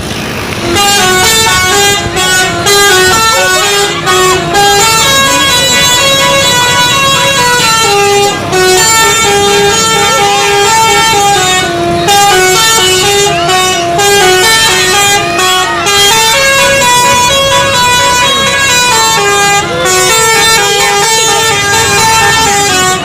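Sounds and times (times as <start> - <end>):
voices: 0.1 - 23.0
multi-tone bus horn melody: 0.5 - 23.0.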